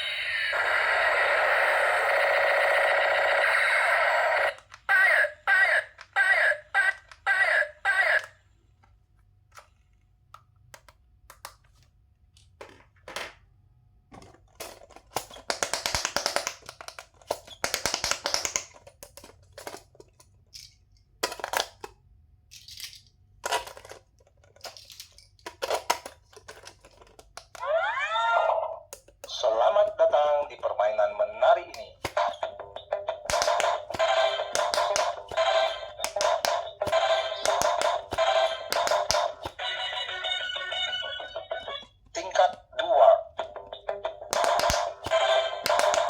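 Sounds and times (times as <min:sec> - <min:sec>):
toy clicks: 0:31.7 - 0:41.4, 0:43.4 - 0:46.0.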